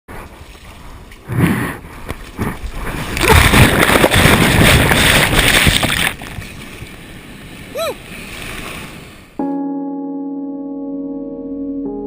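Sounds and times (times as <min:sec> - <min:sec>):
water churning and splashing: 0:00.1 - 0:09.3
wind on microphone: 0:00.3 - 0:09.3.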